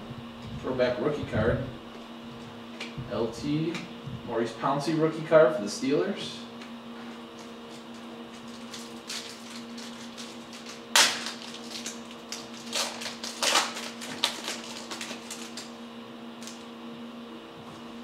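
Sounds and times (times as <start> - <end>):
low electrical hum: 0.0 - 18.0
cards crinkling and rustling: 7.4 - 15.8.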